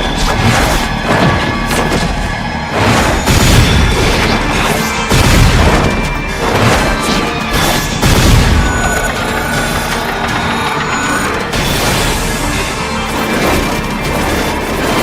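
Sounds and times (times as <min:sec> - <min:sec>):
dramatic orchestral score: 0:00.0 - 0:15.0
heavy booms and crashing impacts: 0:01.0 - 0:07.0.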